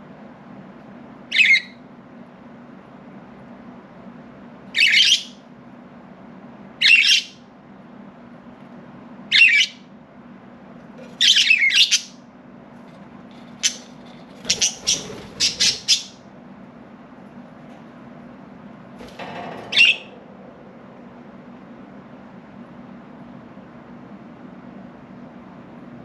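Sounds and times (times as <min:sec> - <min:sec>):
budgerigars chirping: 0:01.3 - 0:01.8, 0:04.8 - 0:05.4, 0:06.8 - 0:07.4, 0:09.3 - 0:09.8, 0:11.2 - 0:12.2, 0:13.6 - 0:16.2.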